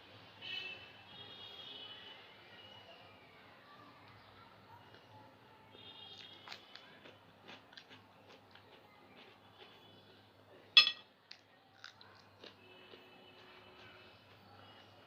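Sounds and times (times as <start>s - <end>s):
wet chewing: 6.1s - 10.2s, 11.2s - 15.0s.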